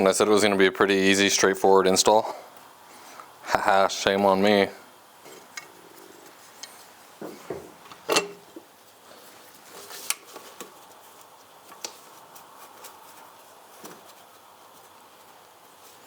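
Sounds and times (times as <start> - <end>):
metal parts and tools clinking: 7.9 - 8.6.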